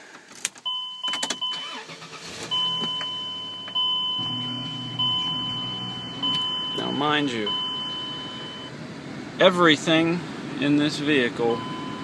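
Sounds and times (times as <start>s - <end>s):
car warning chime: 0.6s - 8.7s, 11.5s - 12.0s
low engine hum: 2.3s - 9.4s, 11.5s - 12.0s.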